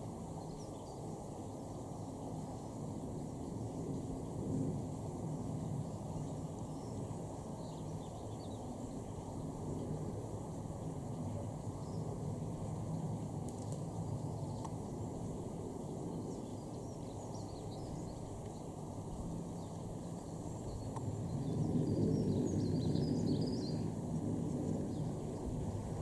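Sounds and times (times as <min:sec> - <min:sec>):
small birds chirping: 0:10.7 - 0:23.9.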